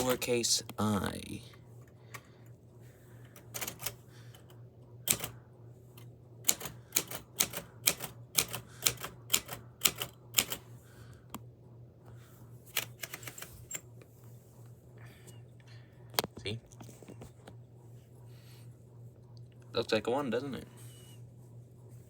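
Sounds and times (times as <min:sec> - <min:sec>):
typewriter keys clacking: 0:03.5 - 0:04.0, 0:05.1 - 0:05.3, 0:06.4 - 0:10.6, 0:12.7 - 0:13.5.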